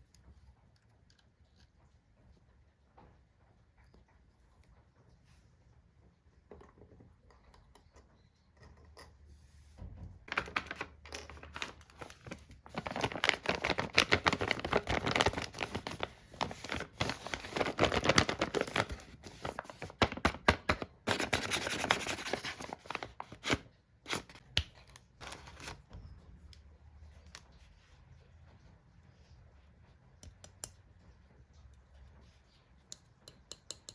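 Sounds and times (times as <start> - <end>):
packaging torn and crinkled: 11.4 - 23.5.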